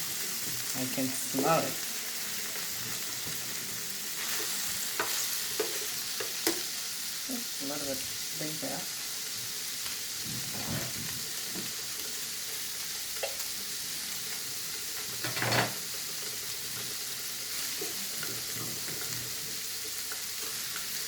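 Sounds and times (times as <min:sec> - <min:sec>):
vegetables sizzling in oil: 0:00.0 - 0:21.0
clatter in frying pan: 0:04.2 - 0:06.7, 0:13.1 - 0:13.5, 0:14.9 - 0:16.9.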